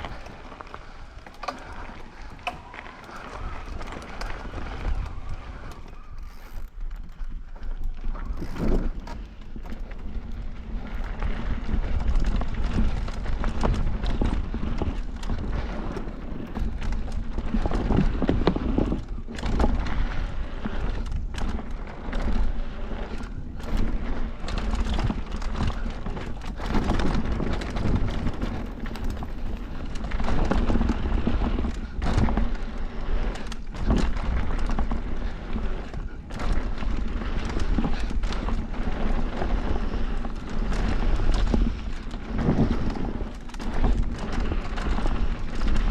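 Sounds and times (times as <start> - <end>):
tyres crunching over dirt and rocks: 0.0 - 18.9
bike knocks and rattles: 0.0 - 45.9
wind buffeting microphone: 0.0 - 45.9.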